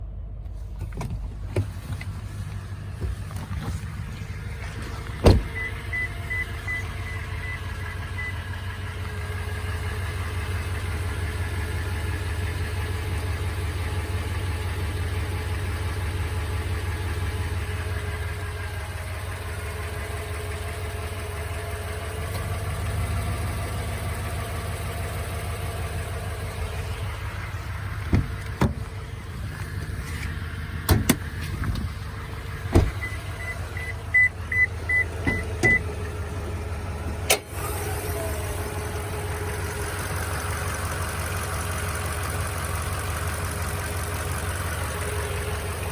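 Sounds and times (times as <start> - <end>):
car engine idling: 0.0 - 45.9
sharp thump: 4.8 - 5.6, 28.1 - 29.0, 32.7 - 33.0.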